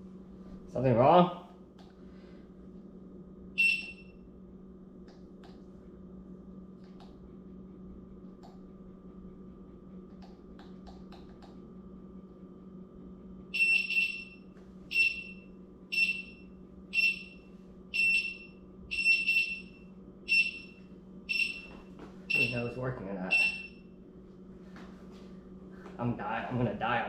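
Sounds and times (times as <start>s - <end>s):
steady low hum: 0.0s - 27.0s
high-pitched warning beeps: 3.6s - 4.2s, 13.6s - 23.8s.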